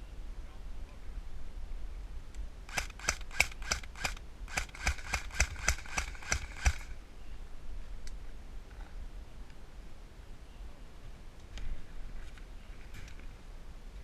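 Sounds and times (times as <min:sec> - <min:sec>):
airsoft rifle shots: 0:02.7 - 0:07.0.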